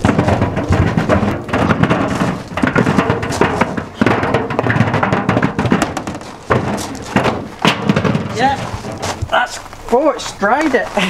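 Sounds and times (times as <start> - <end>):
objects thudding in tumble dryer drum: 0.0 - 10.6.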